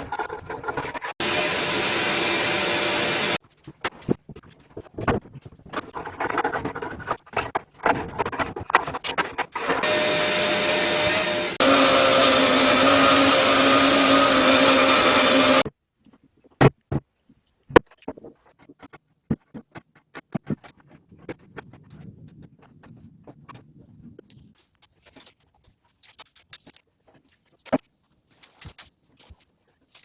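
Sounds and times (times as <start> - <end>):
tool scraping wood: 0.0 - 3.4, 5.7 - 15.6
power tool whining: 1.0 - 3.4, 9.6 - 15.6.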